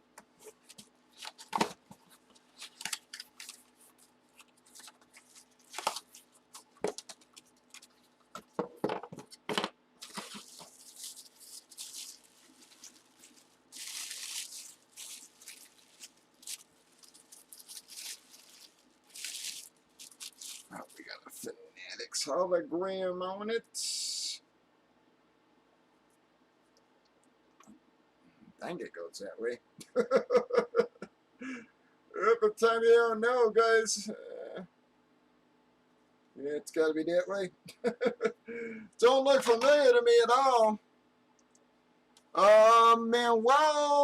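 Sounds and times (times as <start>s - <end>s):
packaging rustling and tearing: 0.5s - 8.6s, 10.0s - 21.0s.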